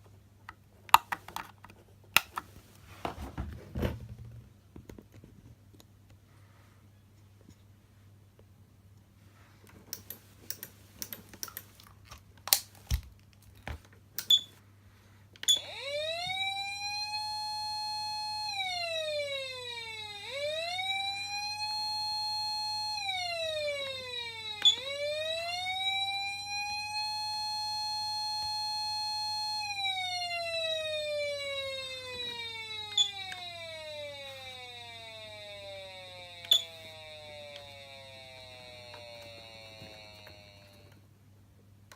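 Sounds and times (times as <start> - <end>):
electronic siren wailing: 15.5 - 41.0.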